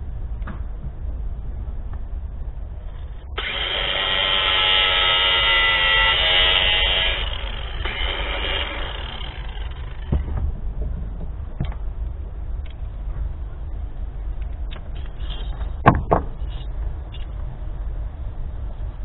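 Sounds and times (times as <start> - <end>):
small electric motor whining: 3.4 - 10.2.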